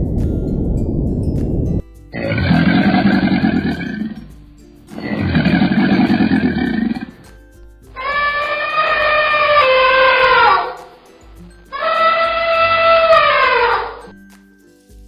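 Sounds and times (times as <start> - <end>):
big cat roaring: 2.2 - 4.3, 4.9 - 7.3, 8.0 - 10.9, 11.8 - 14.1.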